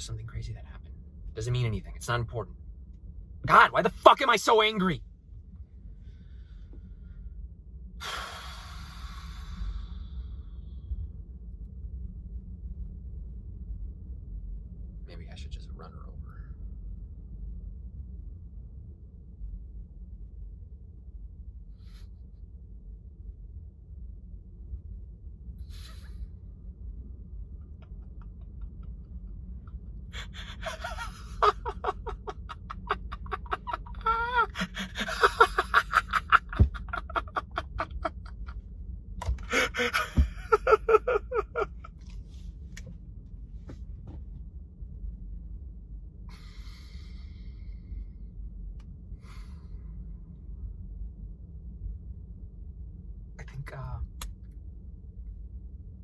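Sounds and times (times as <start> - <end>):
low steady hum: 0.0 - 56.0
man gasping: 39.4 - 40.3.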